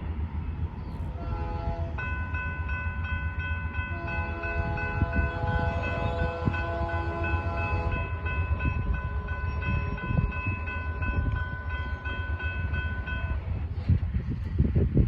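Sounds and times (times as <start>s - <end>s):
locomotive engine rumble: 0.0s - 15.0s
locomotive air horn chord: 1.1s - 2.2s, 3.9s - 8.2s.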